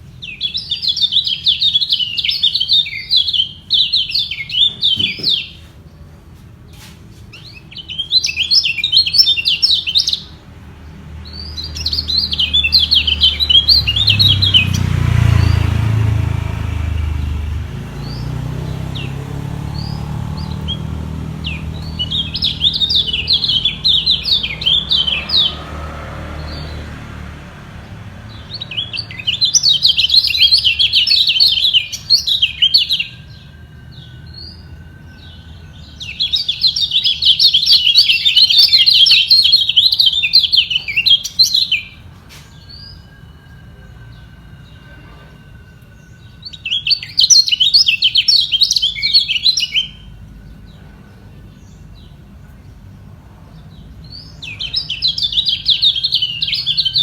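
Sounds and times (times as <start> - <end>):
songbirds chattering song: 0.0 - 57.0.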